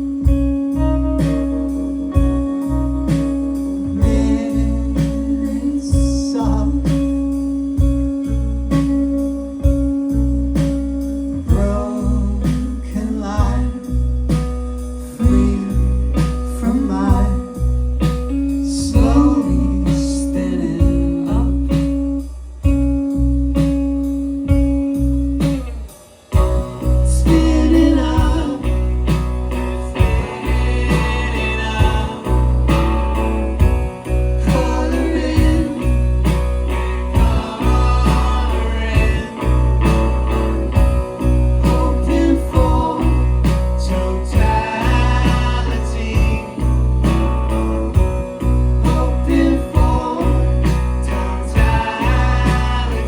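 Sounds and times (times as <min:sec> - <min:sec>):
guitar: 0:00.0 - 0:53.0
heavy bass line: 0:00.0 - 0:53.0
drums beating: 0:00.2 - 0:11.9, 0:20.8 - 0:53.0
person singing: 0:03.8 - 0:07.2, 0:18.7 - 0:21.9, 0:26.4 - 0:29.2, 0:29.8 - 0:33.6, 0:34.2 - 0:40.8, 0:41.5 - 0:47.2, 0:48.8 - 0:53.0.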